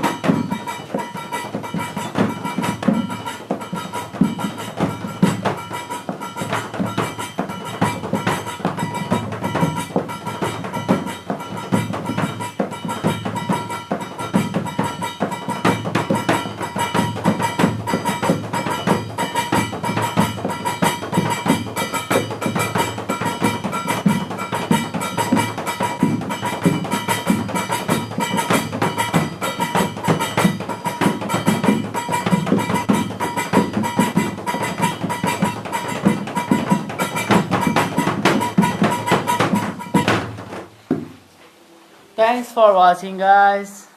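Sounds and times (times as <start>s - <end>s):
fast dense drumming: 0.0s - 40.6s
wood block strikes: 0.0s - 41.2s.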